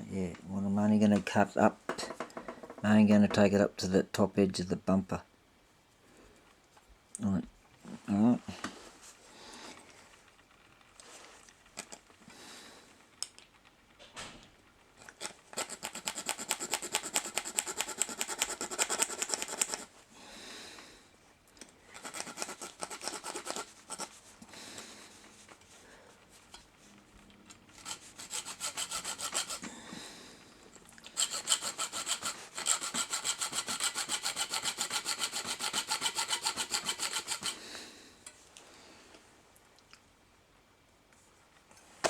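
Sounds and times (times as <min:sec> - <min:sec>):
hand saw cutting metal: 0:15.2 - 0:19.9, 0:21.9 - 0:24.2, 0:27.7 - 0:29.7, 0:31.0 - 0:37.6.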